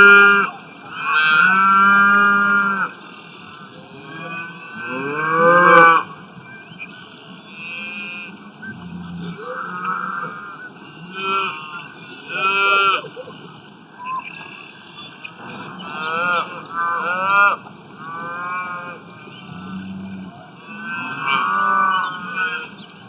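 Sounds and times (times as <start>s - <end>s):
cattle mooing: 3.8s - 6.1s, 7.6s - 13.4s, 15.4s - 22.7s.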